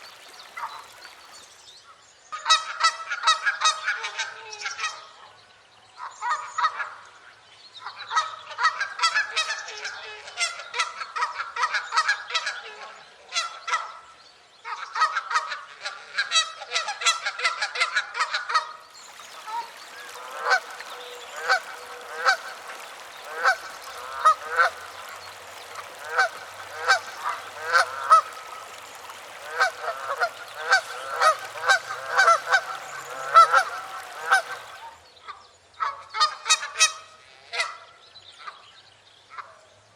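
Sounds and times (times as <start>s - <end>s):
steady hiss: 18.9s - 35.0s
geese honking: 19.1s - 35.0s.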